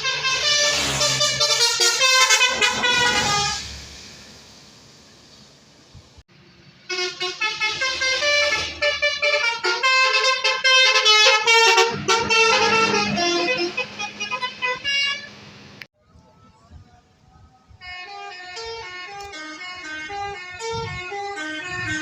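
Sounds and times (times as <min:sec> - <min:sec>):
musical bus horn melody: 0:00.0 - 0:04.1, 0:06.8 - 0:15.4, 0:17.7 - 0:22.0.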